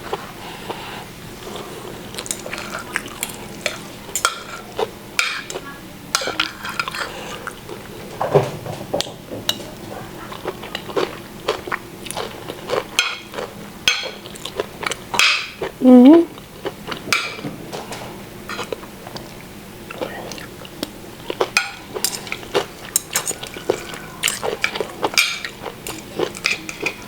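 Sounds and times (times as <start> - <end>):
cutlery clinking against plate: 2.2 - 7.5, 8.2 - 11.1, 12.9 - 15.6, 17.1 - 18.7, 21.5 - 27.0.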